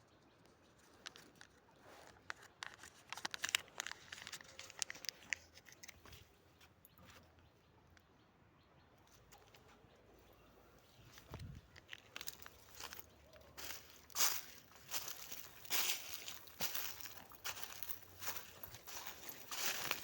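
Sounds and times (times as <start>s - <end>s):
crackling and rustling: 0.7s - 7.2s, 10.9s - 20.0s.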